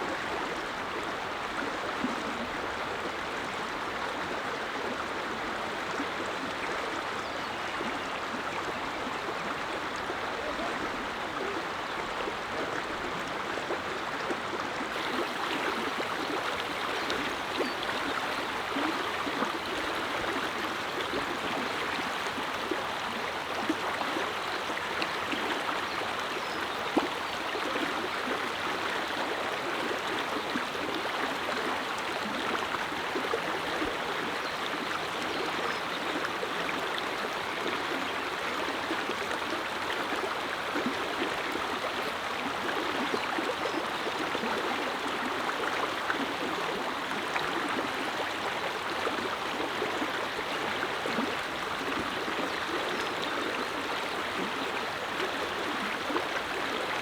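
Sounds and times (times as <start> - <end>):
river water rushing and babbling: 0.0 - 57.0
small water splashes: 14.9 - 32.4.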